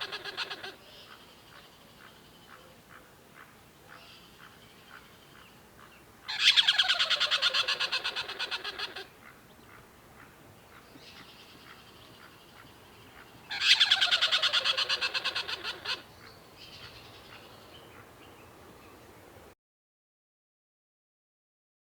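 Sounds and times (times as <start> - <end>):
soft squirrel chattering calls: 0.0 - 18.2
squirrel rattling chatter: 13.5 - 16.0.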